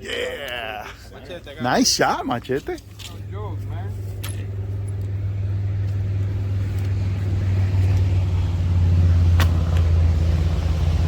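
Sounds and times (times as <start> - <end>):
vehicle engine humming: 0.8 - 11.0.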